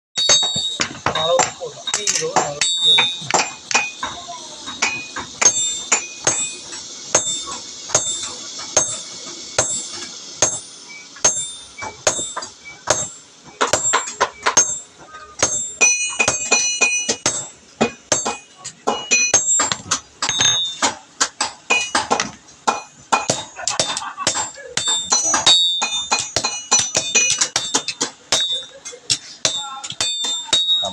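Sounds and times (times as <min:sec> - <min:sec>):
hammer striking blade on anvil: 0:00.2 - 0:30.9.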